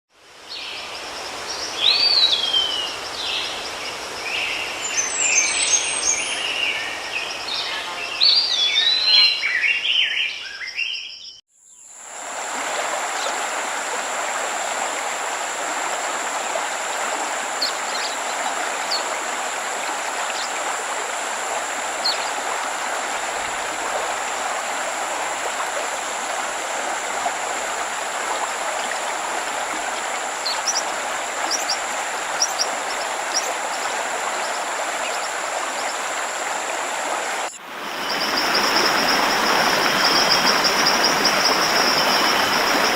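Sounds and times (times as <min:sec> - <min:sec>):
rush of falling water: 0:00.2 - 0:09.4, 0:12.0 - 0:42.9
birds singing: 0:00.6 - 0:11.4, 0:37.5 - 0:42.9.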